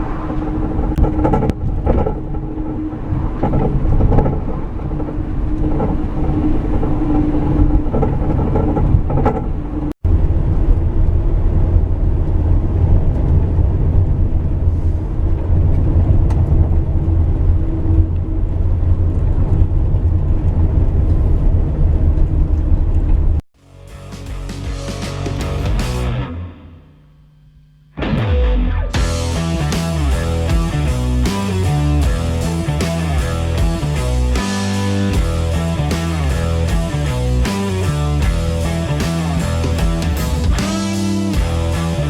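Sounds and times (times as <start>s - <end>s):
vehicle engine running: 28.0s - 42.0s.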